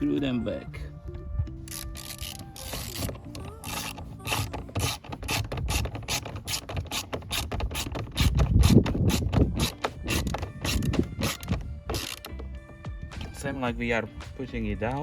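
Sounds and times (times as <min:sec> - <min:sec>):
ratcheting tool clicking: 0:01.7 - 0:12.4.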